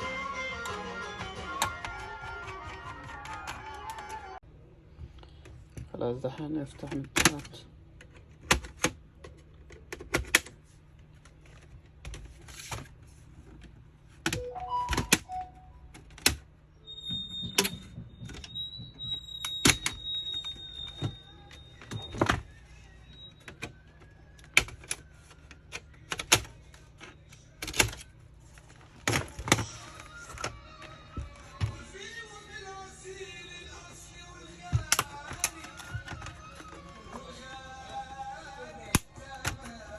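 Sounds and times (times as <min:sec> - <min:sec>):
faint high tone: 0:14.4 - 0:16.0.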